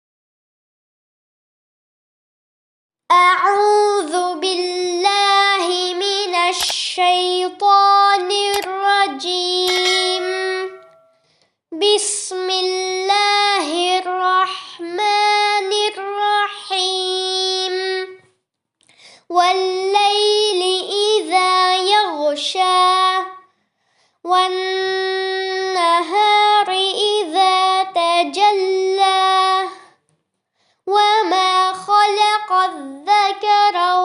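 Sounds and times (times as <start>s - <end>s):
child chanting recitation: 3.1s - 10.3s, 11.8s - 18.2s, 19.2s - 23.4s, 24.3s - 30.0s, 30.9s - 34.0s.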